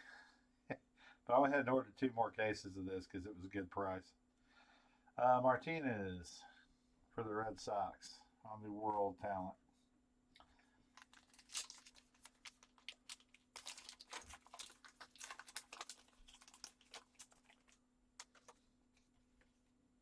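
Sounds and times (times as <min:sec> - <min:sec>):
faint steady hum: 0:00.0 - 0:20.0
cards clicking and crinkling: 0:10.9 - 0:19.5.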